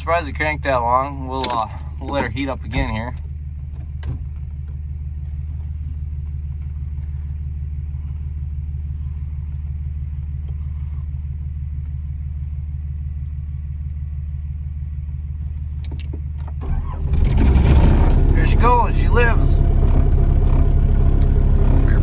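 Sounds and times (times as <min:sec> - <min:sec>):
diesel engine idling: 0:00.0 - 0:22.0.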